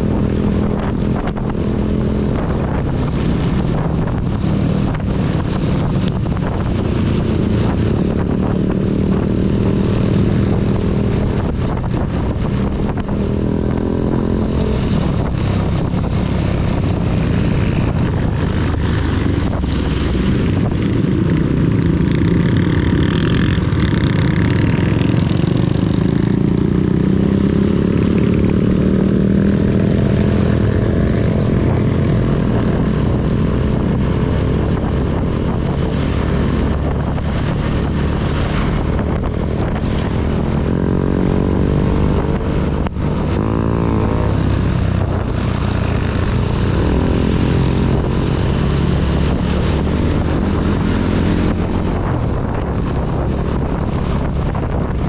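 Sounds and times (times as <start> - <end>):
motorcycle engine accelerating: 0.0 - 55.0
wind noise: 0.0 - 55.0.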